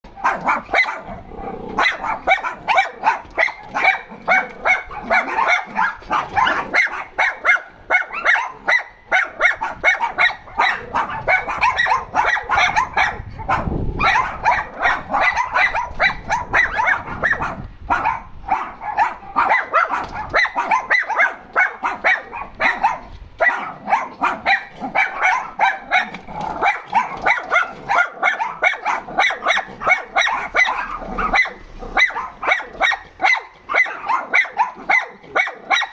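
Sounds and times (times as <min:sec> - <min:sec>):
dogs barking: 0:00.1 - 0:35.9.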